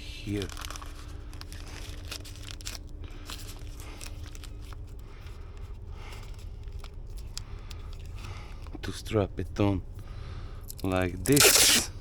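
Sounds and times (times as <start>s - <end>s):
steady low rumble: 0.0s - 11.2s.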